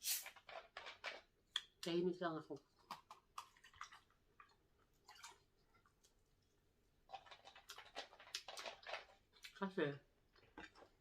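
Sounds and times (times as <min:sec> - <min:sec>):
person chewing food: 0:02.7 - 0:09.6, 0:10.2 - 0:11.0.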